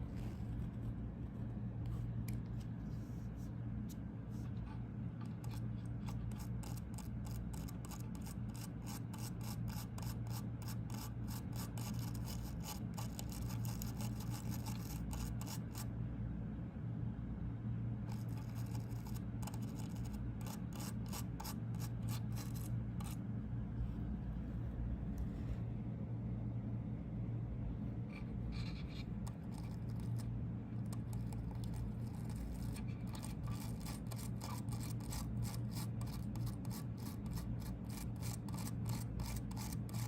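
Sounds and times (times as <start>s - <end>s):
steady low hum: 0.0s - 40.0s
rapid rubbing strokes: 4.3s - 15.9s, 18.1s - 23.2s, 28.1s - 40.0s.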